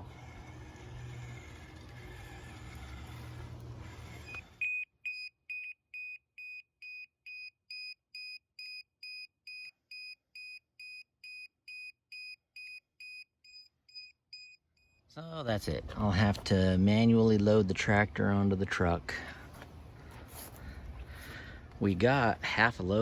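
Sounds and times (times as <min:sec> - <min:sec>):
steady running hum: 0:00.0 - 0:04.6, 0:15.4 - 0:23.0.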